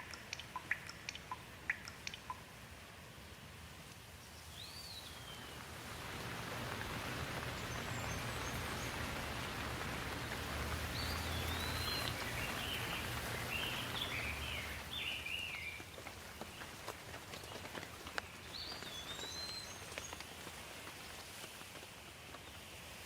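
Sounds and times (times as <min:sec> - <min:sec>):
rain falling: 0:00.0 - 0:23.0
bird calling and chirping: 0:10.7 - 0:15.8.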